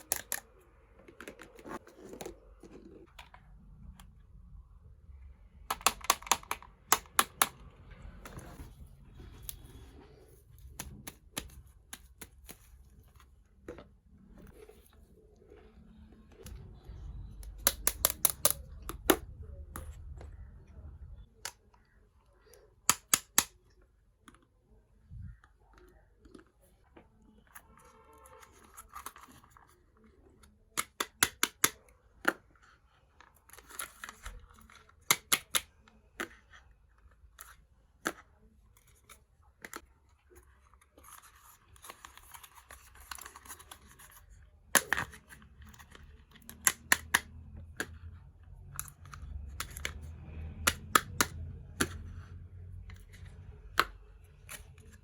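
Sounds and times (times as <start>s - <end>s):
plastic toy pieces clicking: 5.7s - 7.6s, 17.5s - 19.2s.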